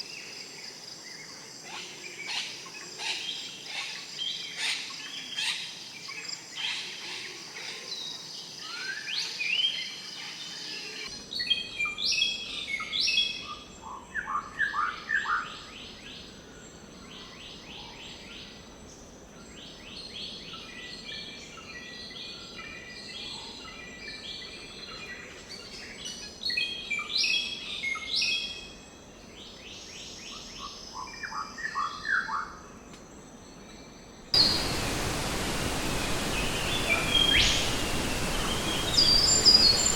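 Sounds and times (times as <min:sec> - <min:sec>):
birds calling and singing: 0:34.4 - 0:39.9
steady rushing noise: 0:34.4 - 0:39.9.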